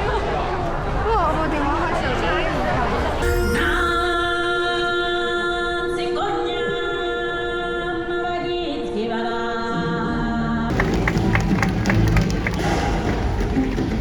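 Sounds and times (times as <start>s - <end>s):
a cappella harmony singing: 3.5s - 10.9s
light percussion: 10.7s - 14.0s.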